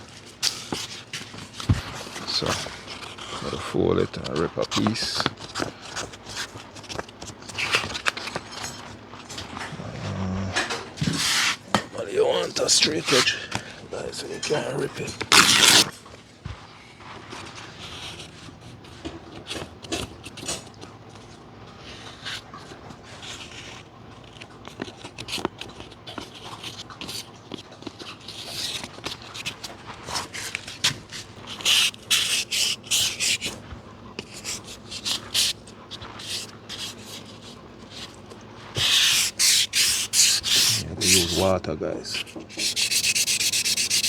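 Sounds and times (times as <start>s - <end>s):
hand sanding strokes: 34.2s - 44.0s.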